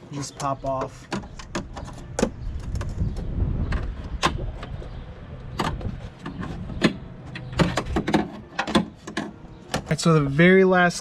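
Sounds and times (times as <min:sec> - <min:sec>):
low rumble: 0:02.3 - 0:07.2.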